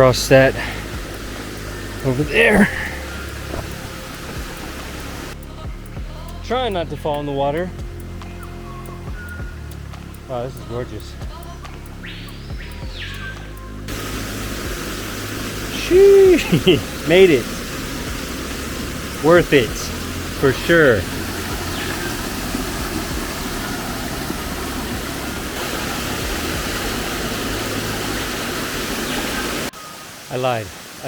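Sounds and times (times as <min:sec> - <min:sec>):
broad rushing hiss: 0:00.0 - 0:05.4, 0:13.9 - 0:31.0
background music with bass: 0:00.0 - 0:29.5.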